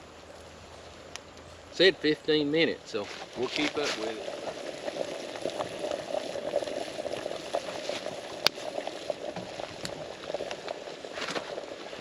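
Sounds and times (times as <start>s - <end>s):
water boiling with small pops: 1.1s - 12.0s.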